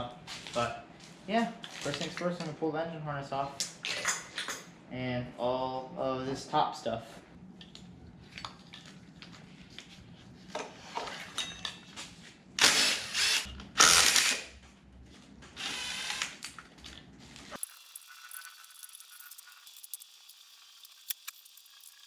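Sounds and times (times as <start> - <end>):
power tool running: 12.6 - 14.5, 15.6 - 16.5.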